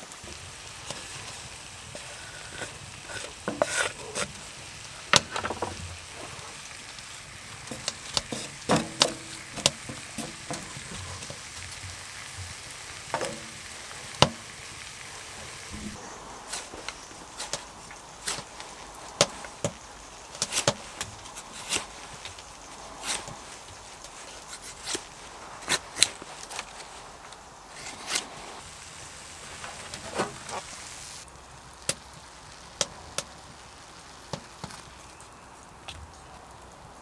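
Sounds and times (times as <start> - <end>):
sausages sizzling in a pan: 0.0 - 37.0
utensil scraping and clicking: 0.2 - 11.8, 15.2 - 28.6.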